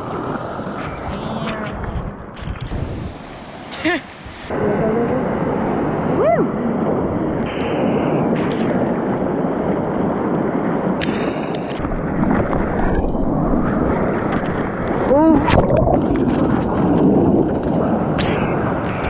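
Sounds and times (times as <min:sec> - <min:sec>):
sea surf rushing: 0:00.0 - 0:19.0
wind buffeting microphone: 0:00.0 - 0:19.0
rising and falling cry: 0:06.2 - 0:06.6.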